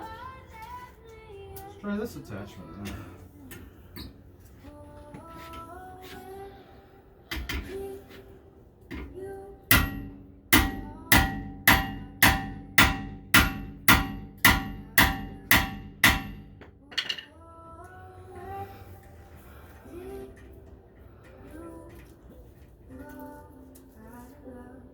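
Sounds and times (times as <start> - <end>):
hammer striking impact screwdriver: 9.7 - 16.7.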